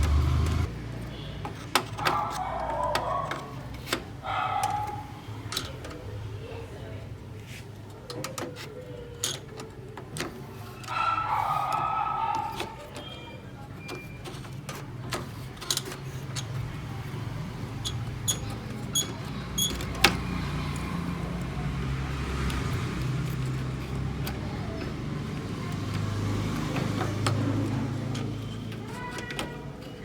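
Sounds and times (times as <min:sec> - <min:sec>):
plastic gears clicking and tapping: 0:07.8 - 0:30.0.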